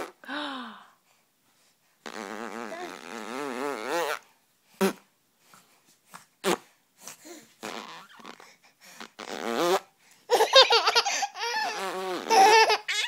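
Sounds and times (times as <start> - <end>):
farting noise: 2.0 - 4.2, 6.4 - 6.7, 7.6 - 9.9, 11.7 - 12.6
baby giggling: 10.3 - 13.0.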